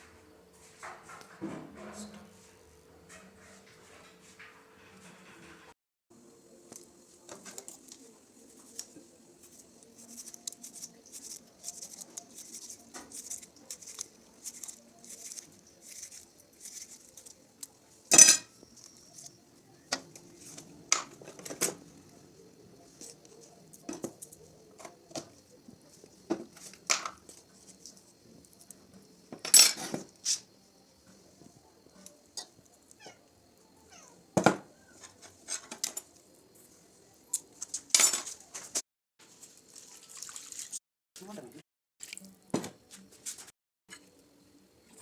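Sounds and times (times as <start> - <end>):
cutlery clinking on dishes: 18.1 - 19.2, 29.4 - 30.1, 37.8 - 38.7.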